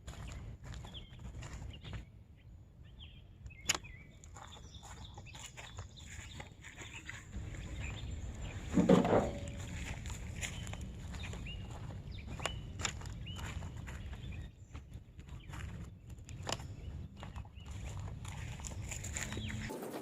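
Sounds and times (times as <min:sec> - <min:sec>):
bird chirps: 0:00.2 - 0:15.7, 0:16.3 - 0:20.0
rustling thump: 0:08.7 - 0:09.8.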